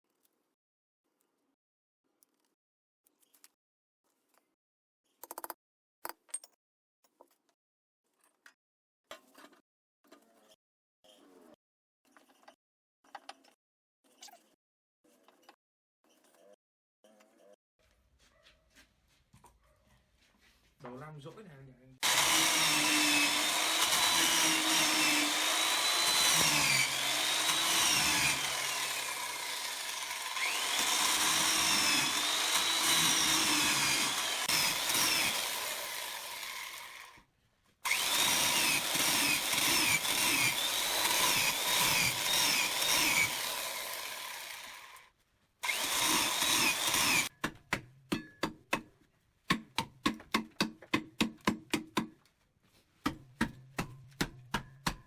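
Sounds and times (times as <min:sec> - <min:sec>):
power tool cutting wood: 0:22.0 - 0:47.3.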